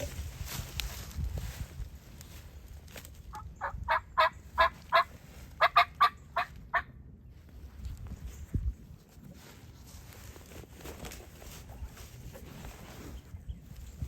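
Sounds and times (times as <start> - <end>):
turkey yelping: 3.3 - 6.8.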